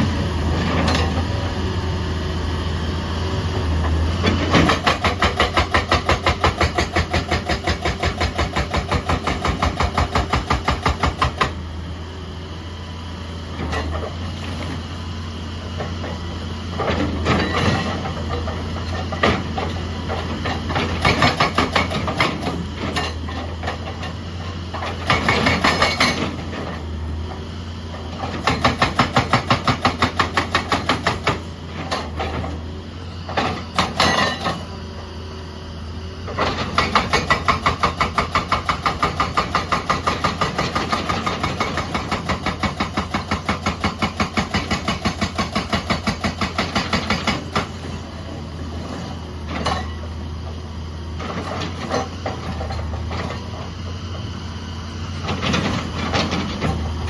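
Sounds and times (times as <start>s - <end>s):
diesel engine running: 0.0s - 57.0s
hydraulic breaker hammering: 4.5s - 11.6s, 20.8s - 23.1s, 28.4s - 32.2s, 36.5s - 47.8s.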